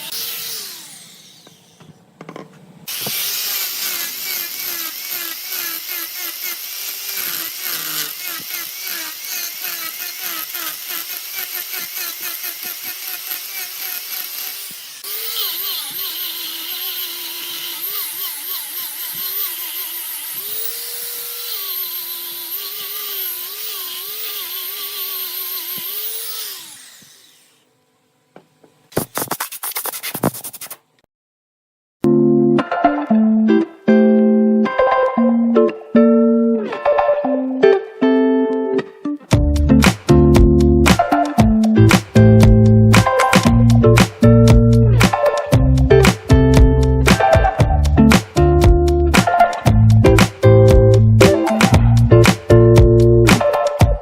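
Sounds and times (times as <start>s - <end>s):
wood lathe motor drone: 0.0s - 2.0s, 2.9s - 27.7s
turning tool scraping wood: 2.9s - 27.6s, 28.9s - 30.8s.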